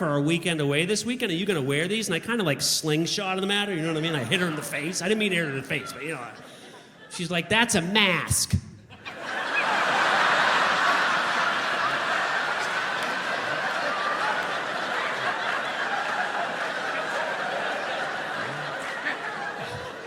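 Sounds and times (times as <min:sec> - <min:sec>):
audience laughing: 0:03.7 - 0:07.8, 0:08.9 - 0:20.0.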